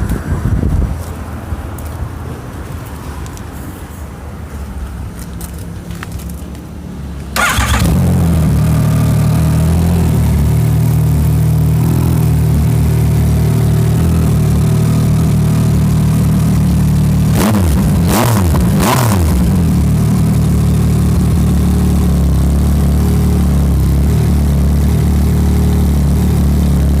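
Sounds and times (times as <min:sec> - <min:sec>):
motorcycle engine idling: 0:07.4 - 0:18.0, 0:19.4 - 0:27.0
motorcycle engine revving: 0:07.4 - 0:27.0.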